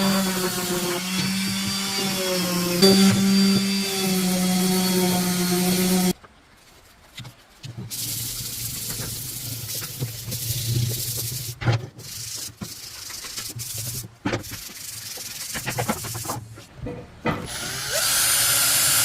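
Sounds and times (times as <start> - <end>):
wood being sanded: 0.0 - 6.2.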